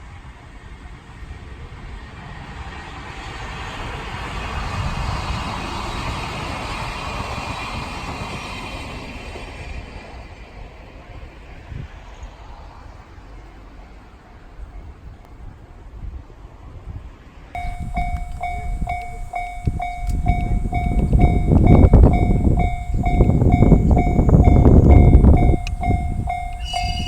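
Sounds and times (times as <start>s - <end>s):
train passing by: 17.6s - 27.0s.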